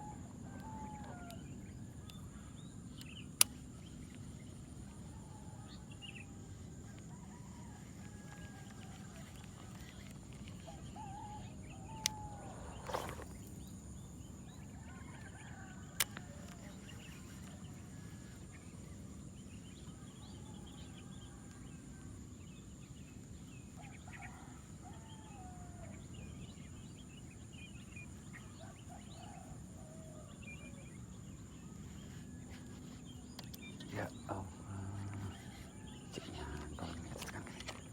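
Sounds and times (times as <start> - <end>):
birds chirping: 32.8 - 37.9.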